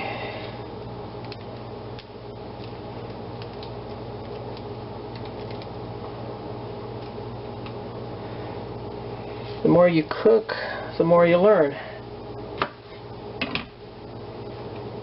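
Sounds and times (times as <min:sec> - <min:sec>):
electrical hum: 0:00.0 - 0:15.0.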